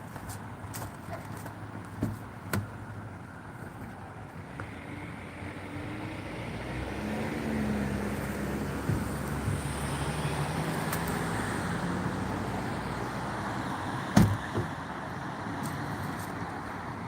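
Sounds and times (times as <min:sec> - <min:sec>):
road traffic: 0:00.0 - 0:17.0.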